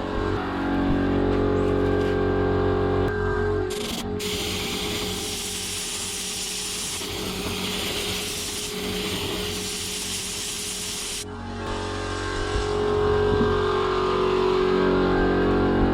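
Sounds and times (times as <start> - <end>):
steady low hum: 0.0 - 15.9
paint spray gun hissing: 4.2 - 11.2.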